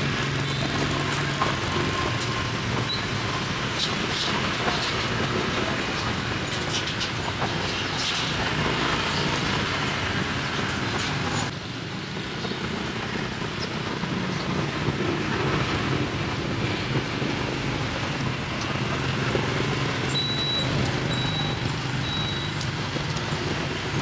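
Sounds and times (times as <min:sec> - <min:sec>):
traffic noise: 0:00.0 - 0:24.0
clicks and clatter: 0:00.3 - 0:11.5.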